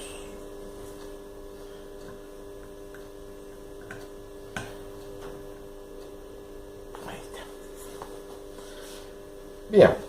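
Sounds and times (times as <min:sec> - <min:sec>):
electrical hum: 0:00.0 - 0:10.0
small clicks and taps: 0:02.0 - 0:05.4.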